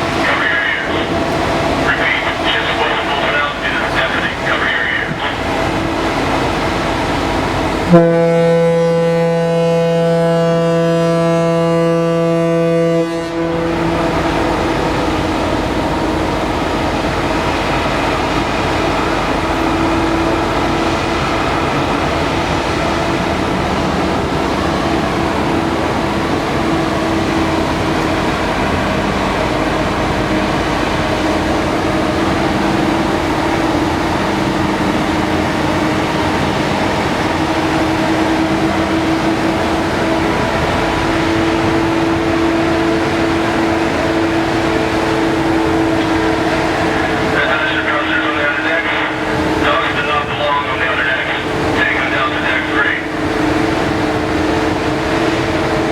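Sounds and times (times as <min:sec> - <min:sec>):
ship machinery drone: 0:00.0 - 0:55.9
ferry horn blast: 0:07.8 - 0:16.5.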